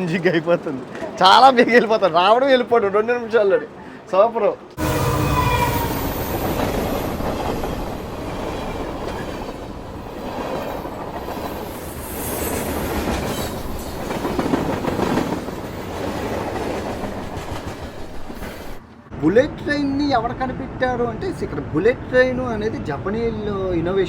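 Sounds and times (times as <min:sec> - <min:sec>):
high-speed train running: 0:00.0 - 0:19.1
faint train whine: 0:00.0 - 0:23.7.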